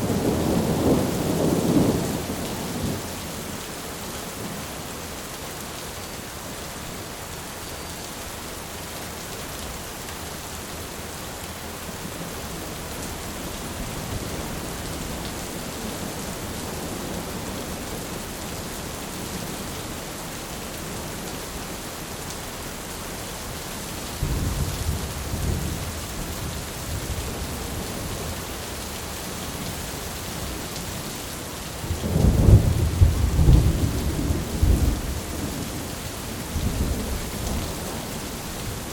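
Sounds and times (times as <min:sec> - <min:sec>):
thunder rumbling: 0:00.0 - 0:03.1, 0:24.2 - 0:28.0, 0:31.8 - 0:35.9
heavy rain pouring: 0:00.0 - 0:38.9.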